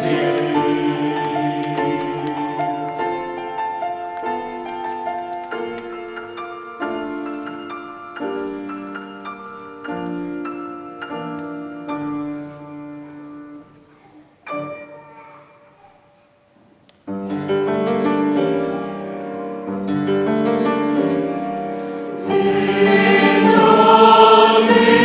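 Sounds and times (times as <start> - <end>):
piano chords: 0.0 - 12.7, 20.1 - 25.0.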